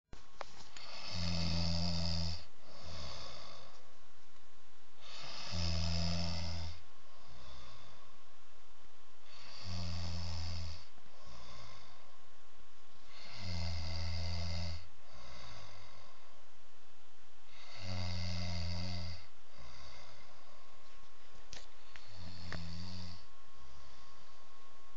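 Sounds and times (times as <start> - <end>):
person snoring heavily: 0.8 - 3.8, 5.0 - 8.1, 9.2 - 12.0, 13.0 - 16.2, 17.5 - 20.5, 22.0 - 24.2.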